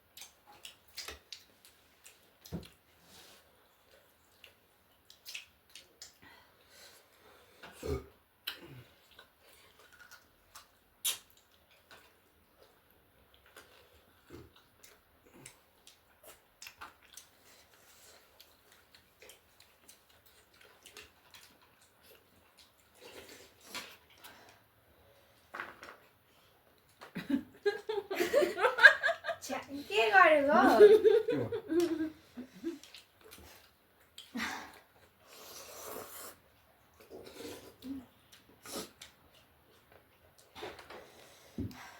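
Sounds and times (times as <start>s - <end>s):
chewing noises: 3.8s - 6.2s, 7.7s - 24.4s, 32.5s - 40.9s.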